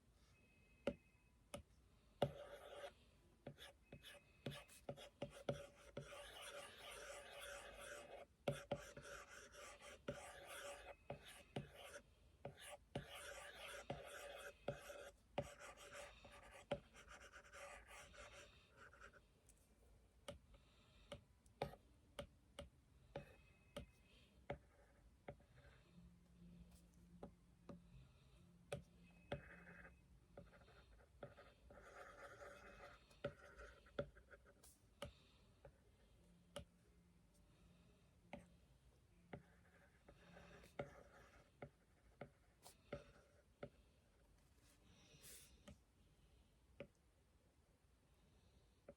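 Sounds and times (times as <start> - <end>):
scratching drawing strokes: 2.3 - 19.2, 29.4 - 34.8.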